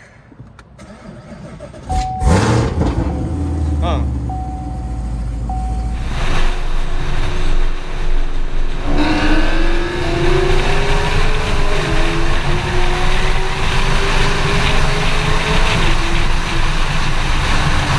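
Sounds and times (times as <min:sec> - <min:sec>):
car engine accelerating: 0:00.8 - 0:07.6.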